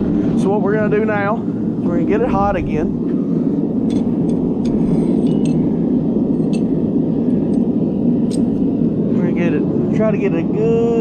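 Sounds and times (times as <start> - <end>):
gas forge burner roaring: 0.0 - 11.0
light metallic clinks: 3.8 - 5.6.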